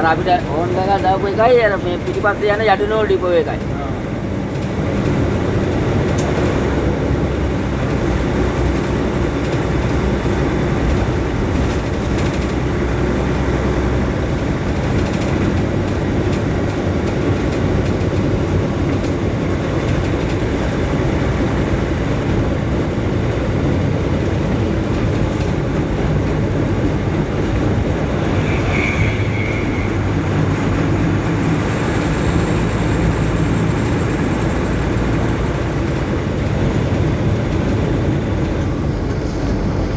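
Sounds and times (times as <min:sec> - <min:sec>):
vehicle engine drone: 0:00.0 - 0:39.9
thin high whine: 0:27.8 - 0:35.2.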